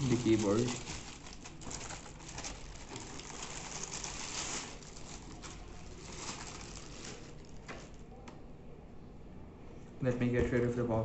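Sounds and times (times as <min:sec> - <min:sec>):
packaging rustling and crinkling: 0:00.0 - 0:08.0.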